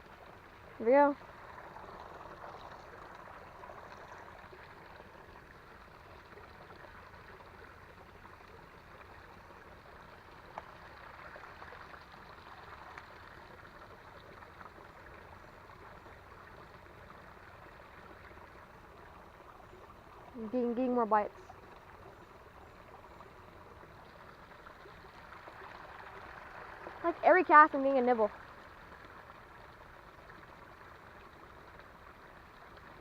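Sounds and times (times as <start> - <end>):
creek water running: 0.0 - 33.0.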